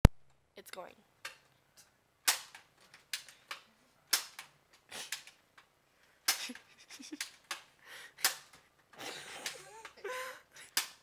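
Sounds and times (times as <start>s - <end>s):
toy dart gun firing pops: 2.3s - 2.6s, 8.2s - 8.5s.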